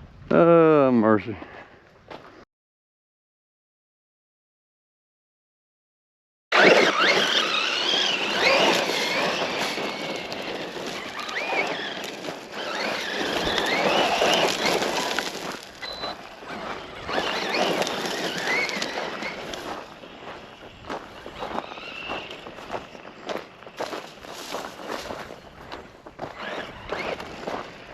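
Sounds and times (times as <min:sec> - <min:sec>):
electric motor whining: 0:06.5 - 0:25.2
tyres scuffing on ground: 0:06.7 - 0:27.9.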